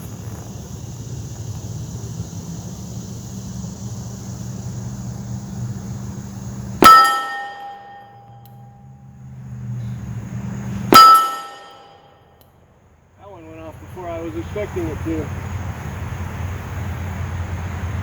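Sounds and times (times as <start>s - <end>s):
steady low rumble: 0.0s - 18.0s
steel target ringing: 6.7s - 9.8s, 10.9s - 12.3s.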